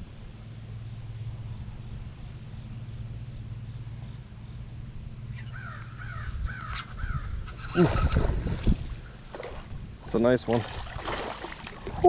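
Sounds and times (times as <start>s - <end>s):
faint insect chirp pulsing: 0.0s - 8.1s
steady low hum: 0.0s - 12.0s
bird calling: 5.1s - 8.2s.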